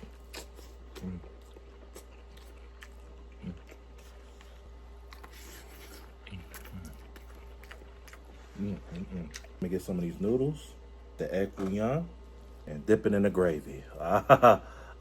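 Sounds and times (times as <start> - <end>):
chewing food: 0.0 - 9.6.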